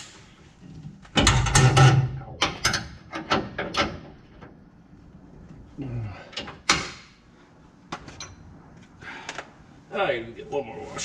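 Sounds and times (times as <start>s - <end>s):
sharp clicks and knocks: 0.6s - 4.6s.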